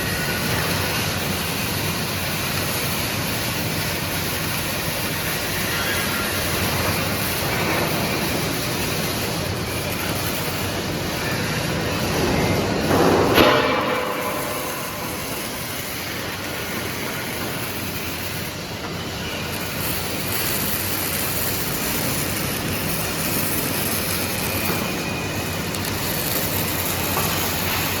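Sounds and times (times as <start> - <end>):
factory machinery clattering: 0.0 - 28.0.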